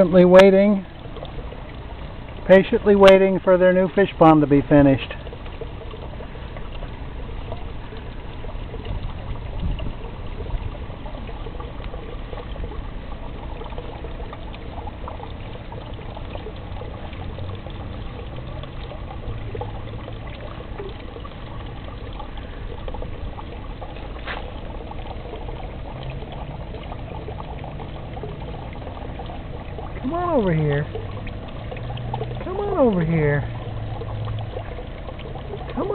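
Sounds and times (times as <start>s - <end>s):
water pouring and trickling: 0.0s - 35.9s.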